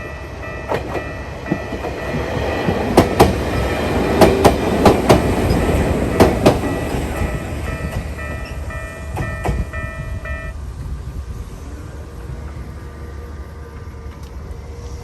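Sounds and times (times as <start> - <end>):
train rumble: 0.0 - 15.0
level crossing electronic alarm: 7.2 - 10.6.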